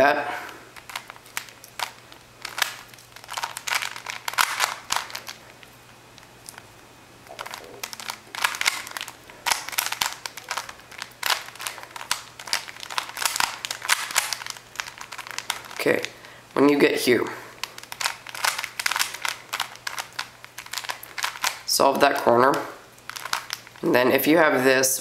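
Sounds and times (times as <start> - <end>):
puzzle cube clicking as turned: 0.8 - 5.4, 7.3 - 16.2, 17.6 - 22.3.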